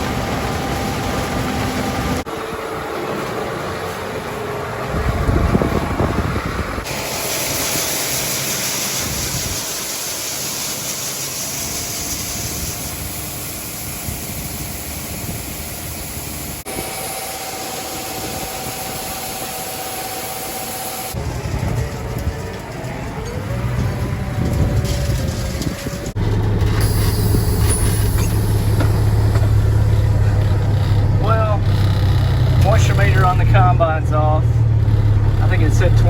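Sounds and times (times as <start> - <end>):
heavy farm machinery engines: 0.0 - 36.0
hiss: 6.9 - 21.2.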